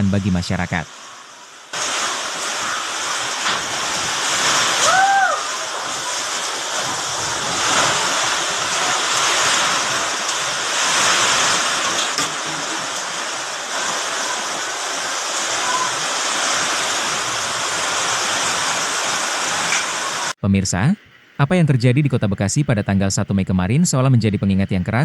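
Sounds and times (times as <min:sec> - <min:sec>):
heavy rain: 0:00.0 - 0:20.9
strong wind: 0:00.9 - 0:20.4.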